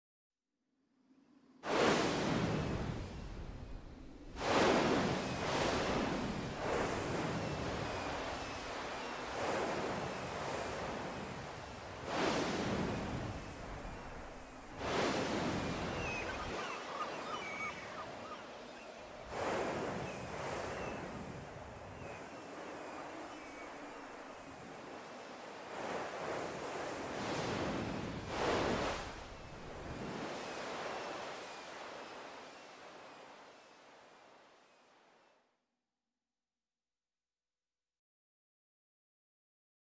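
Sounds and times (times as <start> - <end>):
ocean waves crashing on beach: 1.6 - 35.2.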